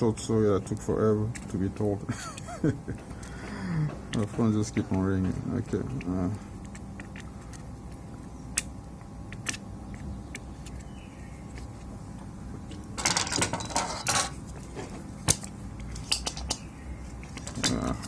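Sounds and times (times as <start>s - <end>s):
metal parts rattling and scraping: 13.0s - 14.4s
metal tools clicking and tapping: 15.3s - 16.6s.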